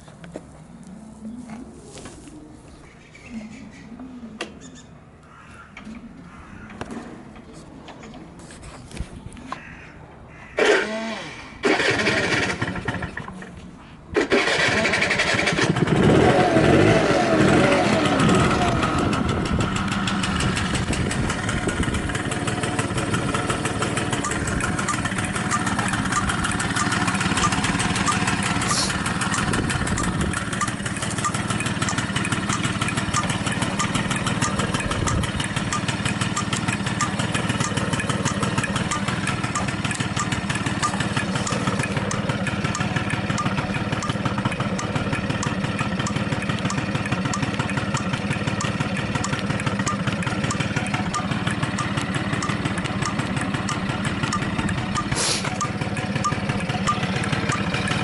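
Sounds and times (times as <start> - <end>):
scooter engine idling: 11.6 - 13.5, 14.2 - 58.0.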